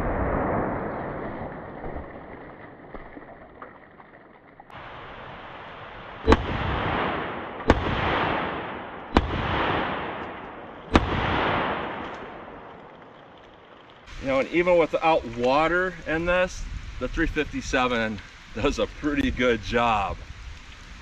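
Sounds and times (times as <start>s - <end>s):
revolver shots with echo: 6.2s - 12.6s.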